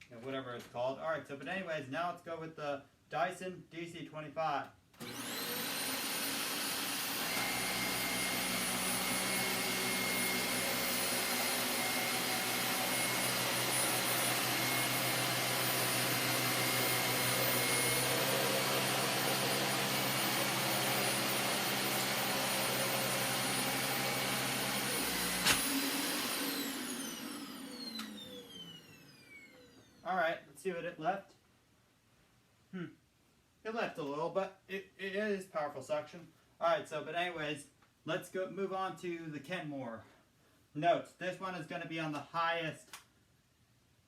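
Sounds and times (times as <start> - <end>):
vacuum cleaner motor whine: 5.0 - 30.0
vacuum cleaner switch click: 25.3 - 25.8, 27.8 - 28.3.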